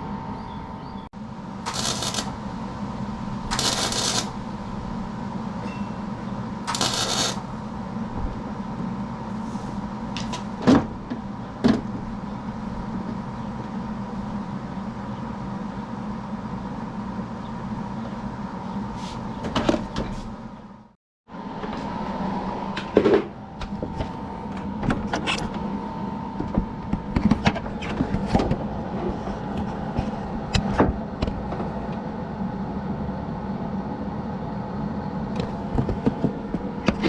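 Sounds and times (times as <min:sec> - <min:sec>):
steady machine hum: 0:00.0 - 0:37.0
welding arc crackle: 0:01.6 - 0:02.4, 0:03.4 - 0:04.4, 0:06.6 - 0:07.5.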